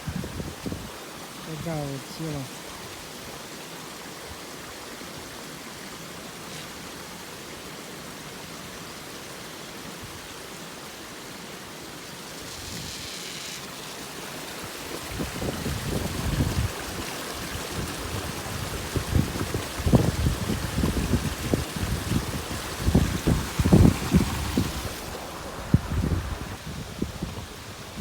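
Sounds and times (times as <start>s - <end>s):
water rushing through dam: 13.6s - 28.0s.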